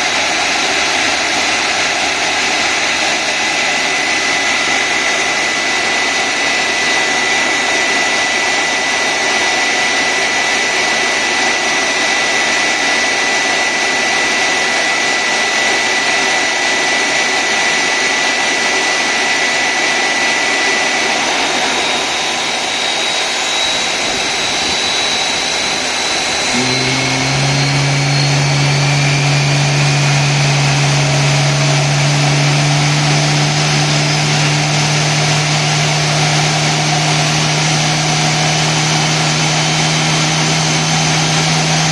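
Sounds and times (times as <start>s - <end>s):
engine spooling up: 0.0s - 41.9s
jet engines whining: 0.0s - 41.9s
steady low hum: 20.3s - 41.9s.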